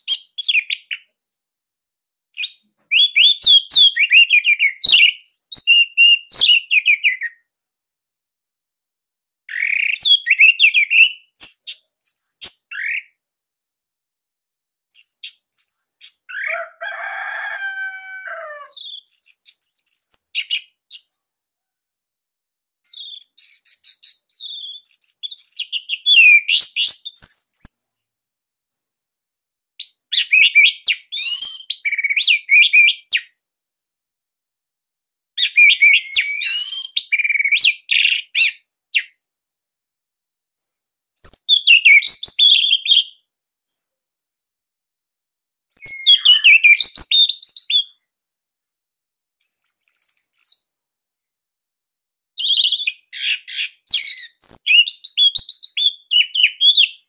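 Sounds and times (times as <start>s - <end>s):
thrush singing whistled phrases: 2.4s - 7.4s, 9.5s - 13.2s, 22.9s - 27.6s, 30.2s - 33.1s, 35.4s - 38.6s, 41.2s - 43.2s, 45.7s - 48.0s, 52.4s - 57.0s.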